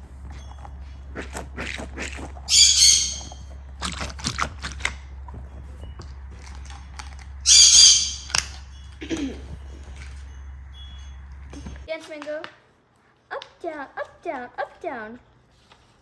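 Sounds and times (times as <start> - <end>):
bird squawking: 1.1 - 4.0, 7.4 - 8.6.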